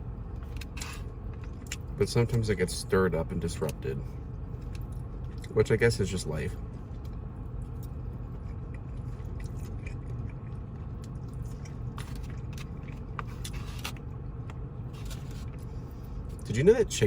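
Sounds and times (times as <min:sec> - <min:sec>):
steady low hum: 0:00.0 - 0:17.0
person chewing food: 0:00.3 - 0:02.0, 0:06.7 - 0:16.4.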